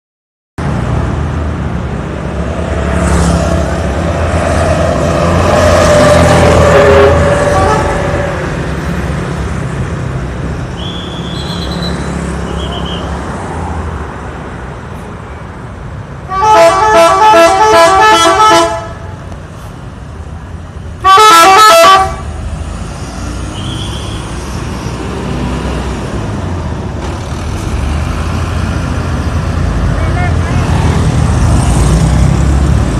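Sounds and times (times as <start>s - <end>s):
low engine and traffic rumble: 0.6s - 32.9s
multi-tone bus air horn: 6.3s - 8.6s, 16.3s - 19.2s, 21.0s - 22.3s.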